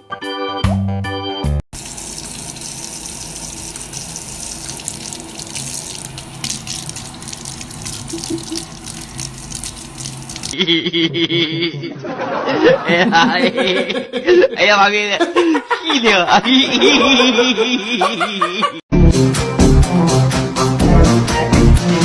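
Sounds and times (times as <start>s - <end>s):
water running: 1.7s - 10.6s.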